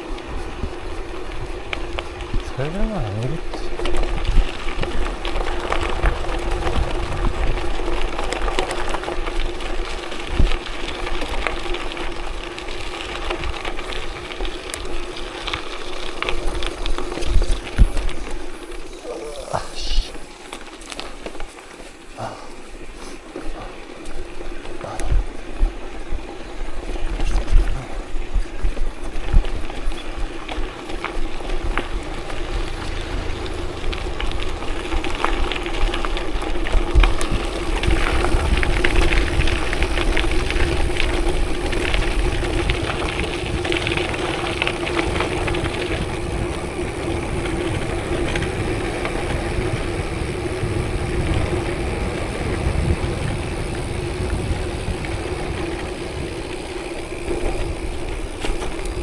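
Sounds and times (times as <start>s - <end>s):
vehicle running hum: 30.6s - 35.8s
low rumble: 31.6s - 35.6s.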